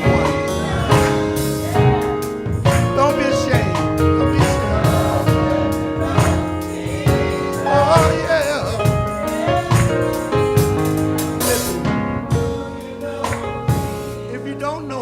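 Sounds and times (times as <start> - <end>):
drum hits: 0.0 - 14.2
keyboard chords: 0.0 - 15.0
person singing: 7.6 - 9.6.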